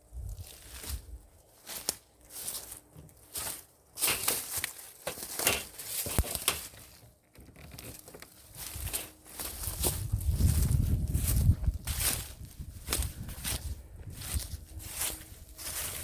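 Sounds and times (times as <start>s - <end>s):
footsteps crunching over debris: 0.1s - 16.0s.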